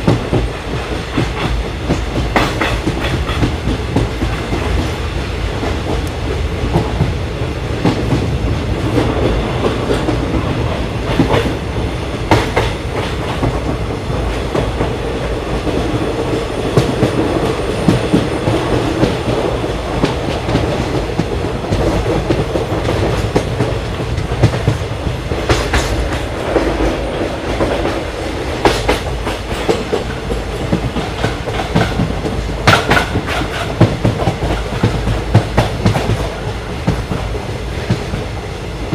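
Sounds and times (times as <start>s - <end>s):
clickety-clack over rail joints: 0.0s - 38.9s
train wheels rumbling on rail: 0.0s - 38.9s.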